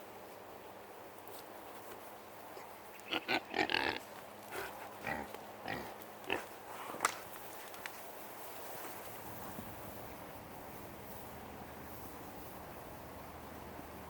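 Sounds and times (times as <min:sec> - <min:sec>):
hogs calling: 0:02.9 - 0:04.0.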